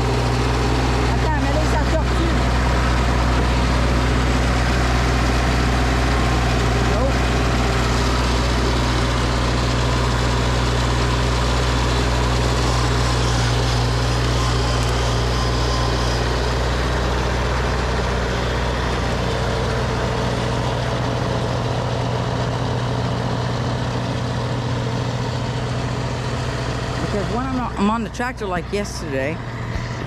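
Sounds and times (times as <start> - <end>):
tractor engine hum: 0.0 - 30.0.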